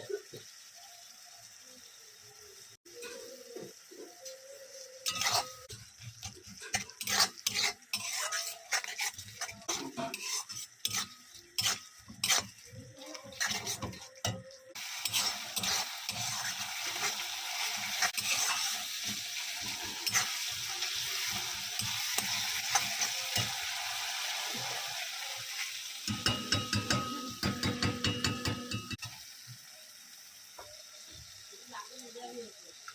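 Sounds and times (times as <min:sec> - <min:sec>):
egg sizzling in a pan: 0:00.0 - 0:32.9
spatula scraping in a pan: 0:02.9 - 0:29.2.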